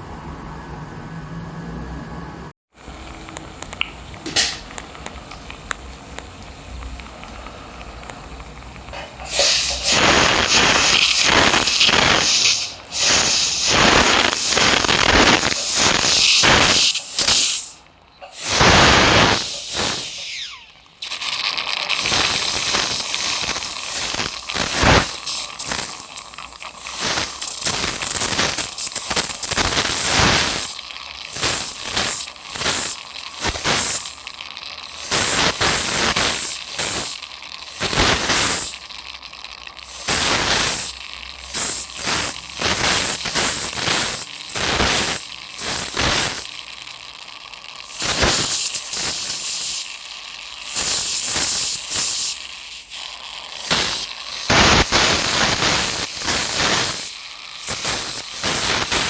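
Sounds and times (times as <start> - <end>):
loud spraying hiss with crackle: 9.2 - 20.5, 22.0 - 30.8, 31.4 - 34.2, 35.0 - 38.8, 40.0 - 46.5, 48.0 - 49.9, 50.7 - 52.4, 53.6 - 59.0.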